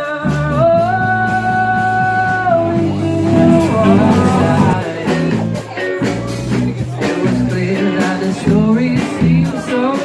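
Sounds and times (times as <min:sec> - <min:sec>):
rock band playing: 0:01.7 - 0:07.4
long held sliding melodic note: 0:02.4 - 0:04.8.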